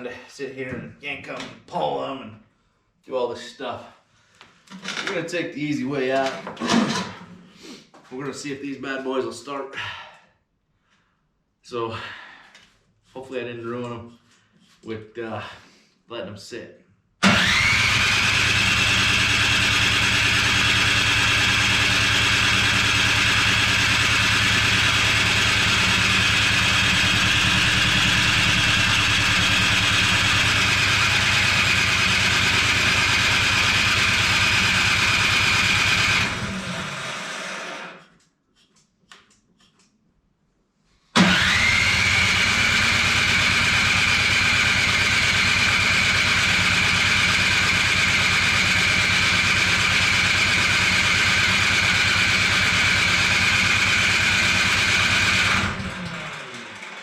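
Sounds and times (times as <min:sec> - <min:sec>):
electric starter cranking engine: 0:17.2 - 0:38.1, 0:41.2 - 0:57.0.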